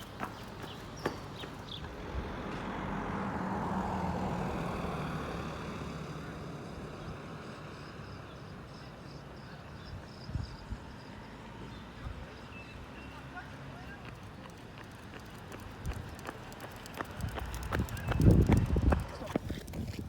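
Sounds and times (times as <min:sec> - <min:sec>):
vehicle driving past: 0:01.8 - 0:08.1.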